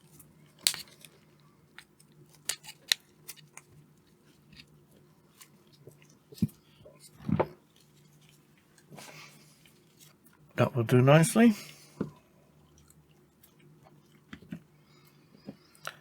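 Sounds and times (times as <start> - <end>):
side cutters snipping plastic: 0.6 - 1.0.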